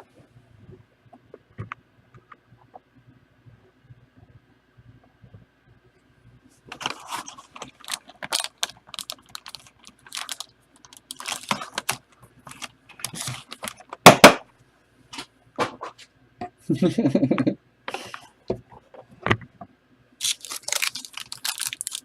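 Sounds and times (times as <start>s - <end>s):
packaging crinkling: 6.7s - 14.3s, 20.2s - 22.0s.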